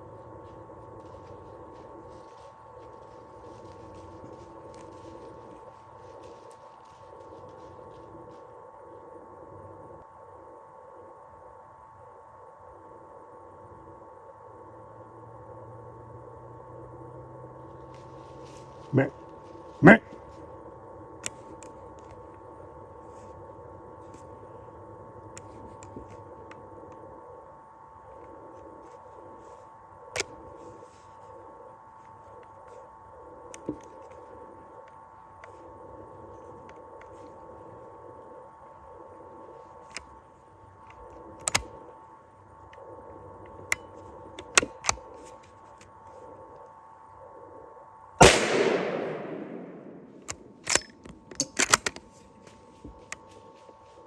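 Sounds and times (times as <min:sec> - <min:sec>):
faint steady hum: 0:00.0 - 0:54.0
faint two-tone whine: 0:00.0 - 0:54.0
gun mechanism clicks: 0:40.9 - 0:41.8, 0:48.2 - 0:52.4.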